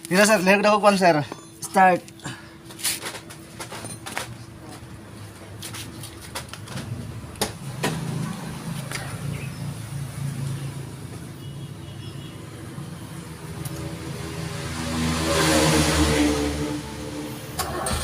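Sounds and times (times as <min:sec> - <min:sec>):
car engine starting and idling: 0:13.5 - 0:18.0.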